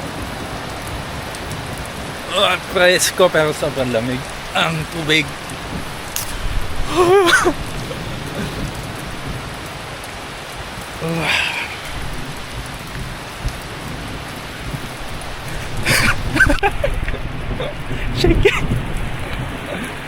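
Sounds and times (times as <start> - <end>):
heavy rain: 0.0 - 20.0
man's shivering voice: 2.3 - 2.7, 6.2 - 8.7, 11.0 - 11.9, 15.6 - 18.8.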